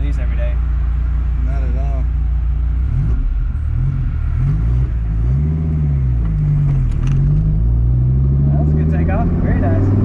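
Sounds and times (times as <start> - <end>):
car engine accelerating hard: 2.7 - 10.0.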